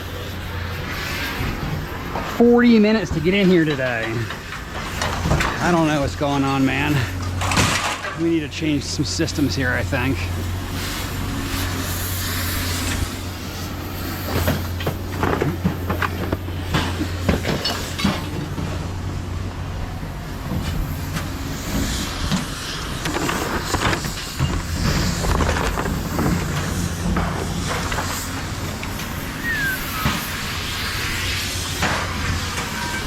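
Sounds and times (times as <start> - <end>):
knocks and clanks: 3.1 - 8.5, 14.3 - 18.8, 20.4 - 29.2.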